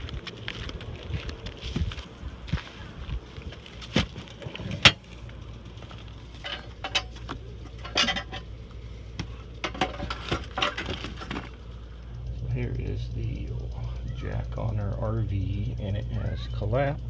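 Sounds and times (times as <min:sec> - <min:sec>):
low steady hum: 0:00.0 - 0:17.0
sharp knocks and clinks: 0:06.3 - 0:08.5.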